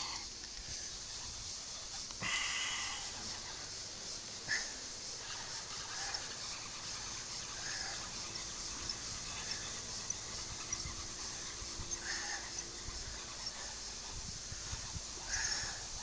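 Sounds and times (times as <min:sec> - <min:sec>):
outdoor hiss: 0:00.0 - 0:16.0
short bird calls: 0:00.0 - 0:16.0
faint light ticks: 0:00.1 - 0:00.8, 0:06.0 - 0:06.3.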